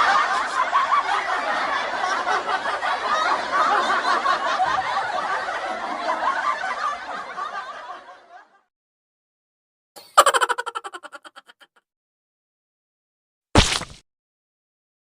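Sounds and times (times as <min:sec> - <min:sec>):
snickering and chuckling: 0:10.0 - 0:11.8.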